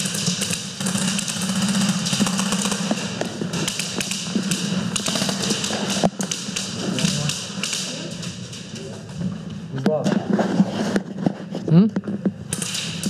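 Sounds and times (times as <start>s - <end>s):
airsoft guns firing: 0.0s - 9.1s, 12.4s - 13.0s.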